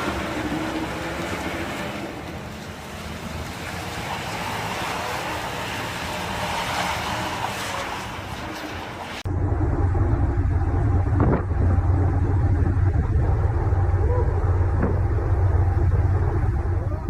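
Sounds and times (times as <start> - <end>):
low vehicle rumble: 0.0 - 17.0
road vehicle rushing: 0.0 - 17.0.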